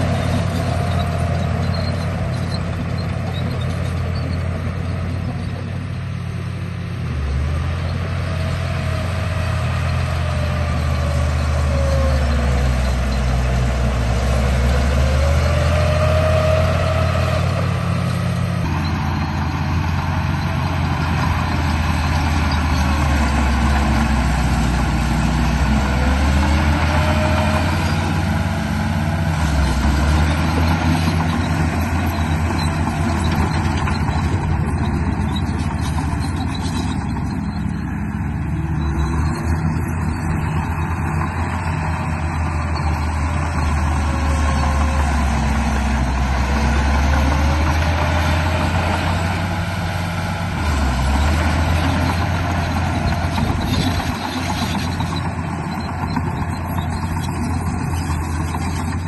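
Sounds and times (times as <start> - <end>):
model bulldozer motor whine: 7.0 - 59.0.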